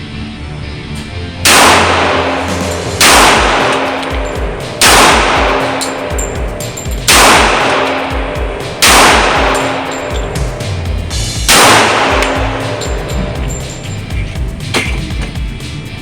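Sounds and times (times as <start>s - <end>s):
music with pulsing low beat: 0.0s - 16.0s
pistol shots ringing: 1.4s - 10.4s, 11.5s - 15.1s.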